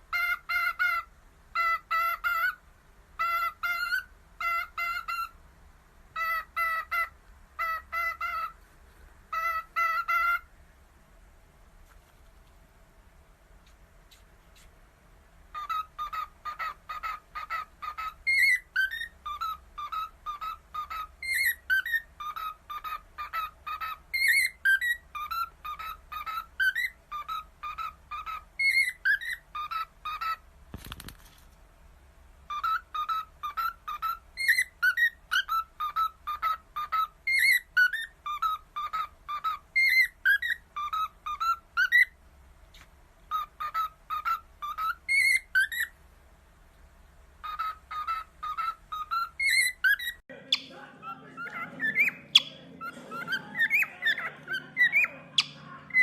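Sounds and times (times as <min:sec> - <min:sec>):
parrot whistling a tune: 0:00.1 - 0:02.6, 0:03.2 - 0:05.4, 0:06.2 - 0:08.6, 0:09.3 - 0:10.5, 0:15.5 - 0:30.4, 0:32.5 - 0:42.2, 0:43.3 - 0:46.0, 0:47.4 - 0:56.0.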